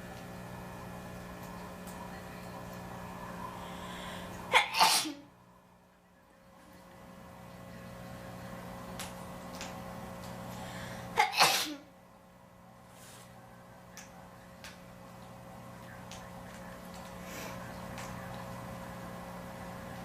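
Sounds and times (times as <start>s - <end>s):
steady low hum: 0.0s - 20.0s
person sneezing: 4.5s - 5.2s, 11.2s - 11.9s.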